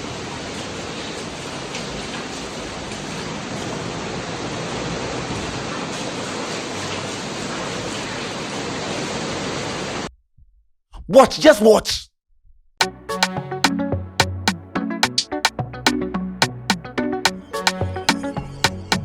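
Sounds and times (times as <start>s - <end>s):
rushing flood water: 0.0s - 10.1s.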